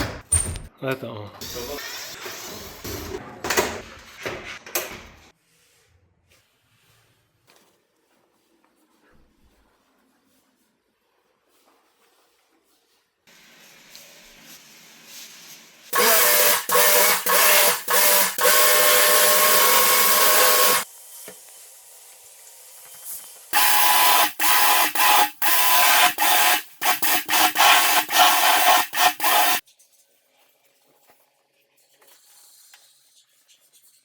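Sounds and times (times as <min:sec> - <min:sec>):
spray gun hissing bursts: 0:15.9 - 0:20.8, 0:23.6 - 0:29.6.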